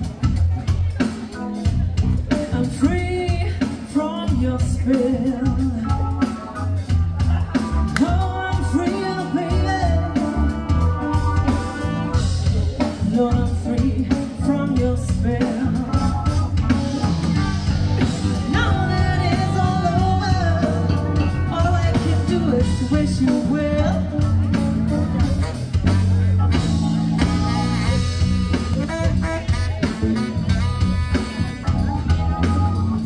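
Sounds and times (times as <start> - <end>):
guitar: 0.0 - 33.0
steady drum beat: 0.0 - 33.0
person singing: 2.3 - 25.3.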